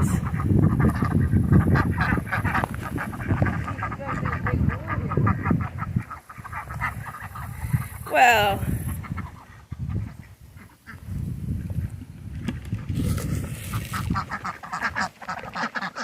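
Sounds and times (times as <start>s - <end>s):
chickens squawking: 0.0s - 11.1s.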